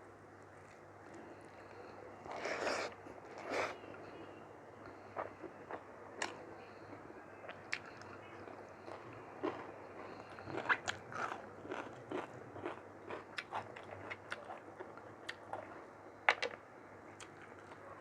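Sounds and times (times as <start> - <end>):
chewing and mouth sounds: 7.4 - 16.6.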